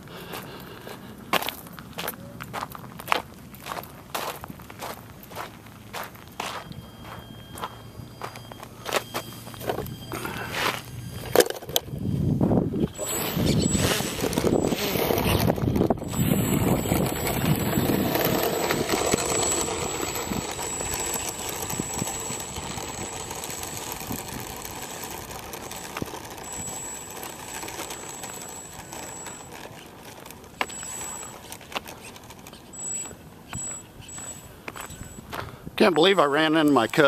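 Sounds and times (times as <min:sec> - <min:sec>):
thin high whine: 0:06.2 - 0:37.0
wind buffeting microphone: 0:11.8 - 0:26.7.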